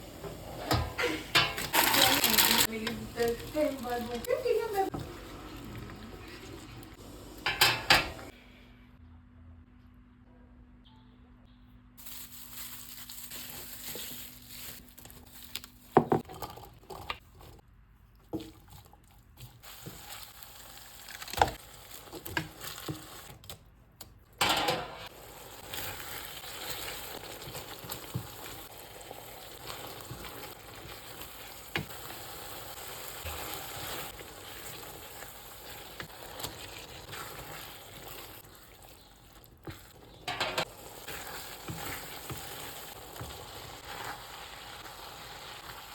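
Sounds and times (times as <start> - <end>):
food sizzling in a pan: 0.0 - 8.2, 24.9 - 45.9.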